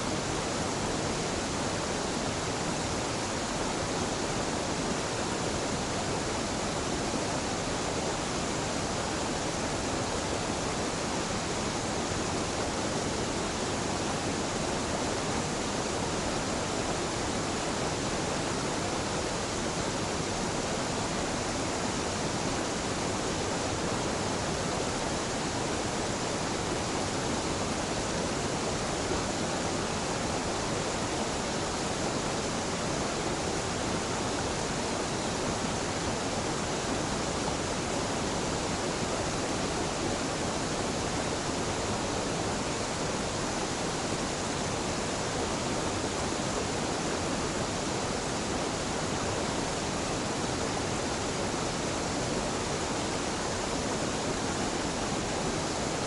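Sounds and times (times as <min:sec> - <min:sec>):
waterfall rushing: 0:00.0 - 0:56.0.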